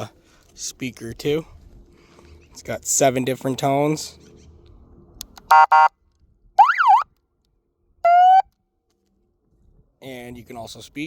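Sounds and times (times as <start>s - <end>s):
double electronic beep: 5.5s - 5.9s
electronic siren sweep: 6.6s - 7.1s, 8.0s - 8.5s.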